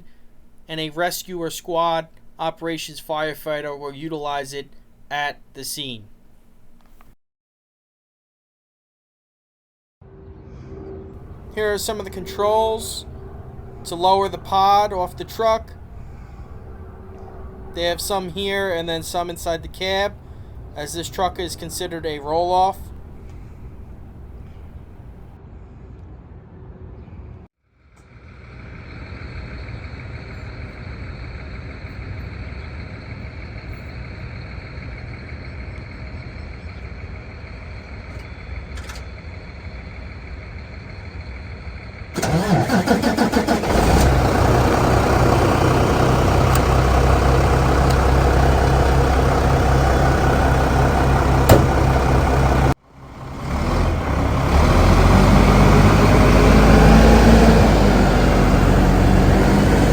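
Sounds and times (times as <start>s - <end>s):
engine starting and revving: 11.2s - 25.3s, 42.2s - 59.9s
diesel engine idling: 11.2s - 25.4s, 28.3s - 38.1s, 40.2s - 59.9s.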